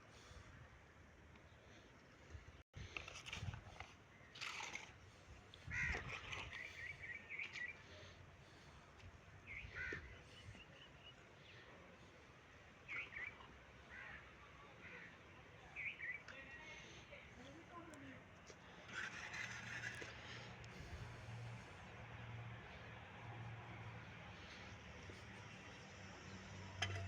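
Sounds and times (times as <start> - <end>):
low steady background noise: 6.8 - 27.0
faint bird calls: 9.5 - 11.9, 12.8 - 16.5.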